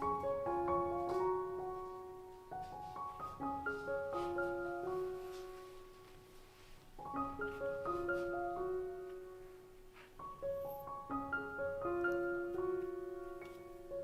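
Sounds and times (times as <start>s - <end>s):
light piano melody: 0.0s - 14.0s.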